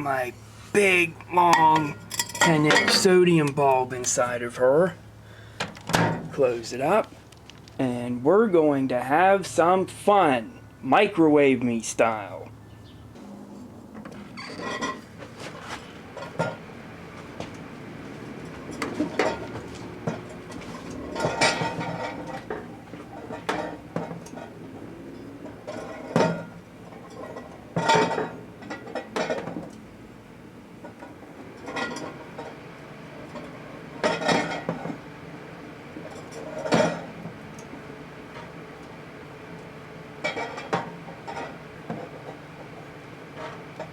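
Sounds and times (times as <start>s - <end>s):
microwave oven humming: 12.6s - 43.9s.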